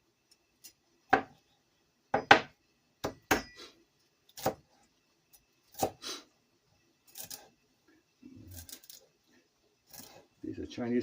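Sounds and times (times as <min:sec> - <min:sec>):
knife chopping on cutting board: 0:04.4 - 0:04.6.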